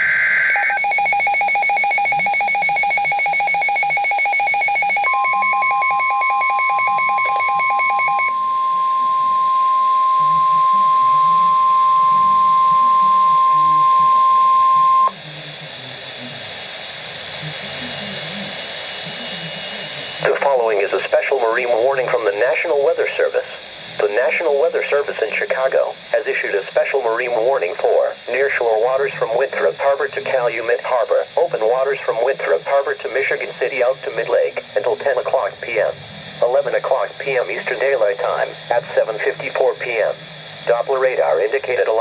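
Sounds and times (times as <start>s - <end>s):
rapid electronic alarm beeping: 0.0s - 15.2s
steady warning tone: 0.0s - 15.8s, 16.8s - 42.0s
radio hiss: 10.1s - 42.0s.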